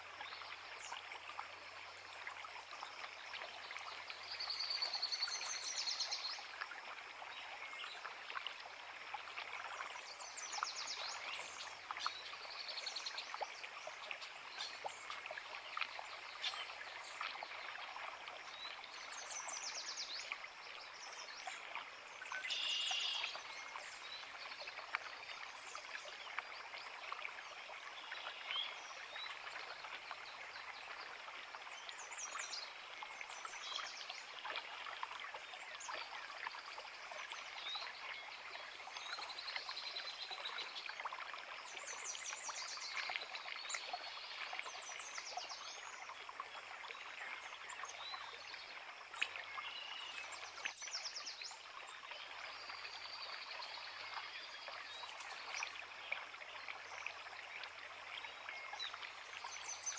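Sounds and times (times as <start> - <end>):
creek babbling: 0.0 - 59.9.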